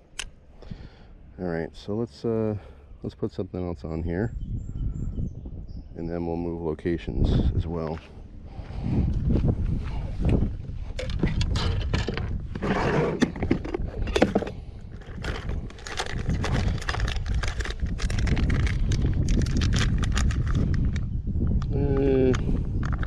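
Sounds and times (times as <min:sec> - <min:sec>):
wind rumble on microphone: 0:03.1 - 0:23.0
plastic clicks and rattles: 0:13.2 - 0:21.0, 0:21.6 - 0:23.0.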